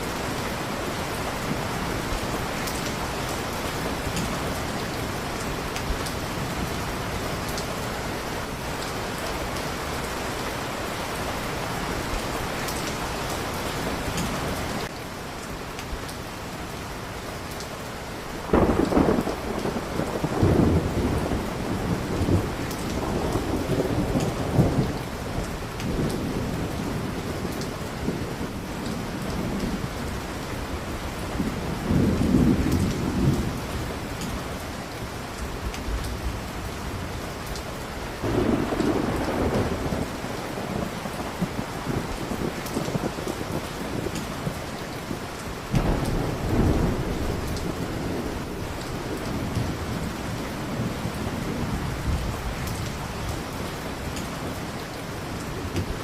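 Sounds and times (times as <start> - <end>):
heavy rain falling: 0.0 - 56.0
deep rolling thunder: 18.5 - 29.9, 31.2 - 33.7, 38.2 - 53.6.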